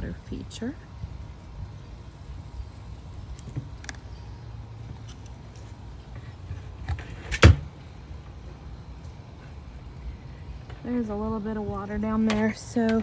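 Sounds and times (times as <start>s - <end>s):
water pump and tubing clicking: 3.2s - 4.2s.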